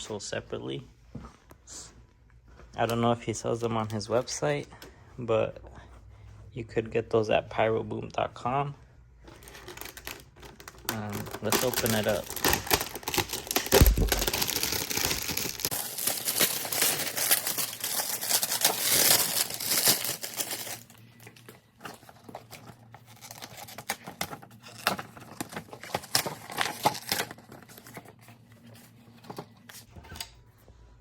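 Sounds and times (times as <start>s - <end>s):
rustling and handling: 8.9s - 30.7s
packaging torn and crinkled: 9.4s - 28.0s.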